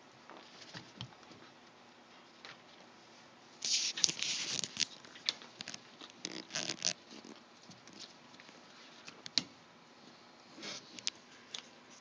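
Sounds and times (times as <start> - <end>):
rustling and scratching: 0.3 - 9.2.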